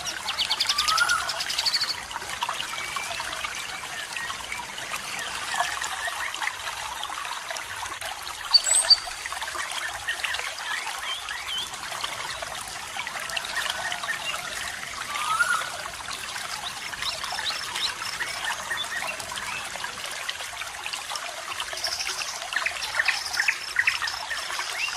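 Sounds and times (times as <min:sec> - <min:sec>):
water trickling and babbling: 0:00.0 - 0:24.9
bird chirps: 0:08.5 - 0:09.2.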